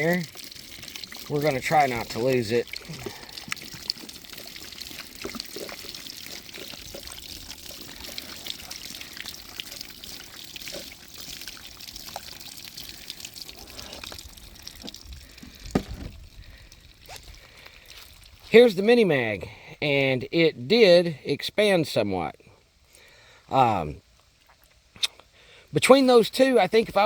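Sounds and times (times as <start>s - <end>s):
water pouring from a jug: 0.0s - 18.6s
sharp knock: 15.7s - 16.2s.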